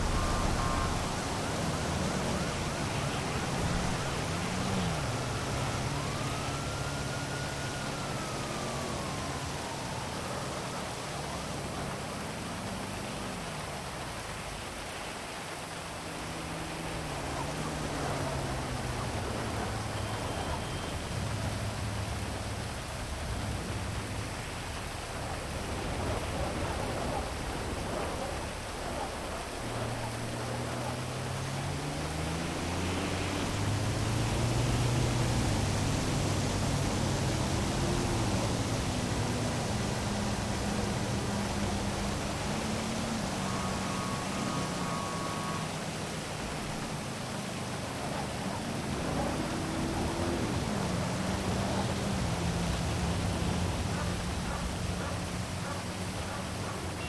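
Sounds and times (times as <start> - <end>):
siren wailing: 0.0 - 12.4, 16.0 - 22.3, 28.9 - 55.5
heavy rain hissing: 0.0 - 57.0
vehicles passing: 0.0 - 57.0.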